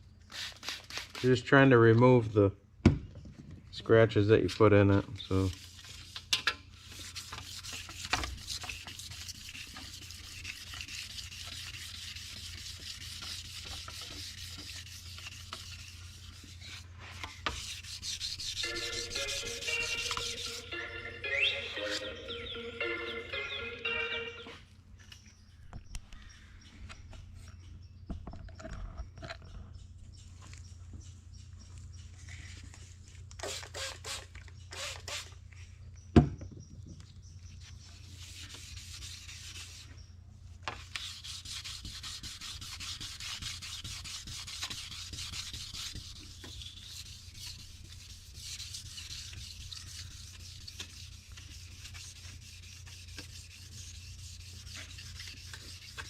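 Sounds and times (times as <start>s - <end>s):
constant low hum: 0.0s - 56.0s
sandpaper rubbing on metal: 0.3s - 1.5s, 5.3s - 20.6s, 37.9s - 39.9s, 40.8s - 56.0s.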